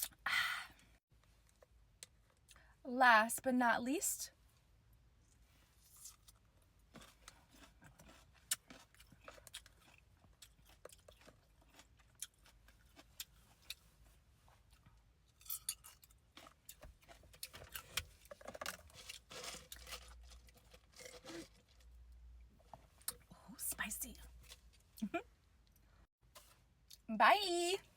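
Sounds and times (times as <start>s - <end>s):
person chewing and crunching food: 5.8s - 23.3s.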